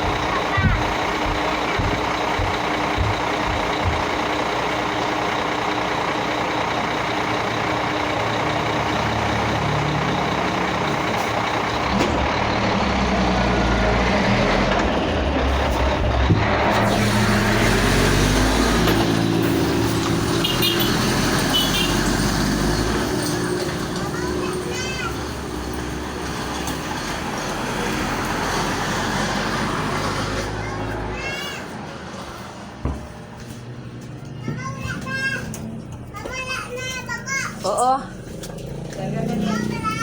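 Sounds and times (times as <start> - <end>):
heavy vehicle engine running: 0.0 - 40.0.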